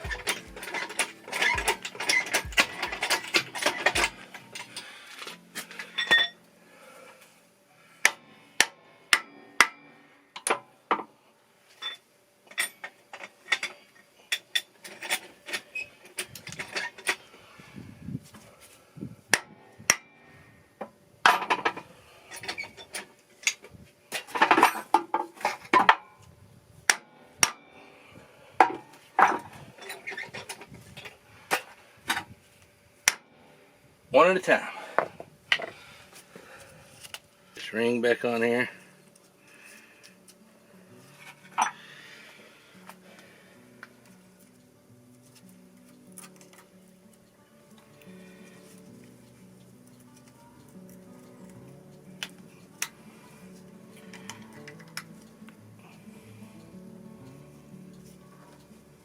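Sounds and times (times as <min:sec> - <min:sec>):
tools and metal parts clicking: 0:00.0 - 0:06.4, 0:11.8 - 0:17.3, 0:21.3 - 0:26.0, 0:28.7 - 0:31.1.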